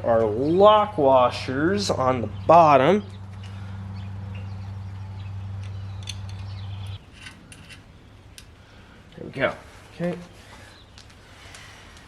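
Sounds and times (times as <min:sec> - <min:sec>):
steady low hum: 0:00.0 - 0:12.0
metal clicks and clinks: 0:05.6 - 0:07.8.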